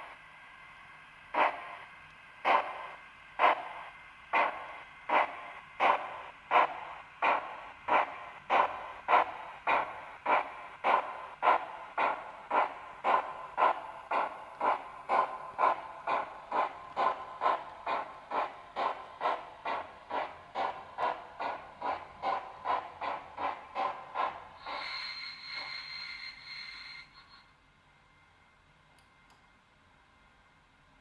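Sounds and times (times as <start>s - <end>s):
model steam locomotive chuffs: 0.0s - 28.4s
steam hiss with high whistle: 24.6s - 27.6s.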